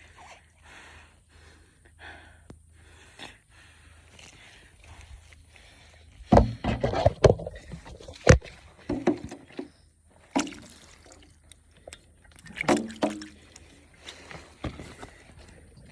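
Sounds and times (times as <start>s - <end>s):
sharp knocks and thuds: 6.2s - 9.8s
water sloshing: 6.5s - 15.9s.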